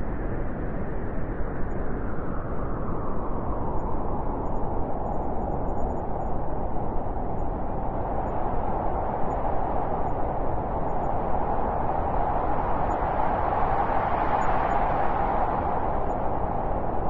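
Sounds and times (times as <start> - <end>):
hollow howling wind: 0.0 - 17.0
blizzard wind rushing: 5.0 - 17.0.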